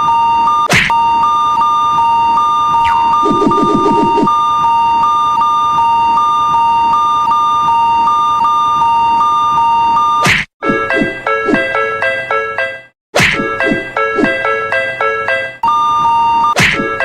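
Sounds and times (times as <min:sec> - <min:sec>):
two-tone electronic warning bell: 0:00.0 - 0:11.0, 0:14.4 - 0:17.0.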